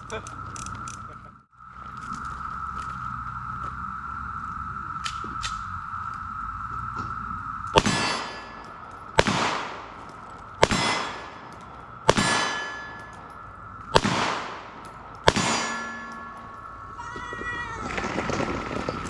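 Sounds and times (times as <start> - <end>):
steady high whine: 0.0 - 19.0
ringing echo: 7.8 - 19.0
pistol shots: 9.2 - 13.2, 13.9 - 16.5.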